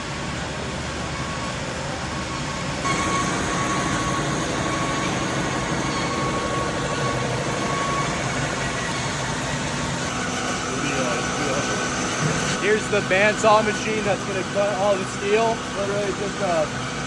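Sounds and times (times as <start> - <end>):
factory machinery din: 2.8 - 15.7
high machine whine: 2.8 - 17.0.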